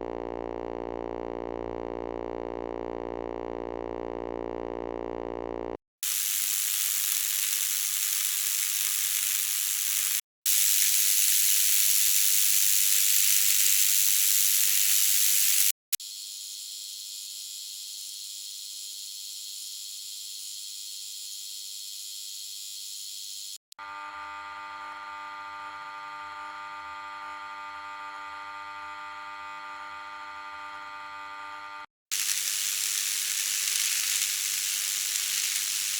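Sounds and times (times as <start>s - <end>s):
electrical hum with deep drone: 0.0s - 5.8s
high hissing electrical buzz: 6.0s - 15.7s, 32.1s - 35.9s
thin steady buzz: 6.0s - 35.9s.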